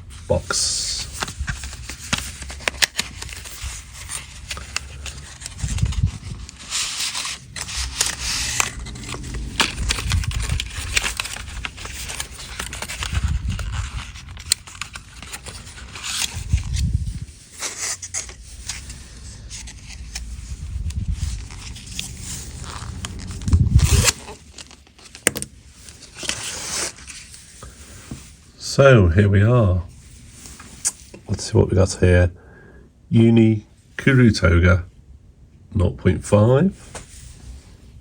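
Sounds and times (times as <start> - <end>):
cardboard and plastic packaging crackling: 0.3 - 28.4.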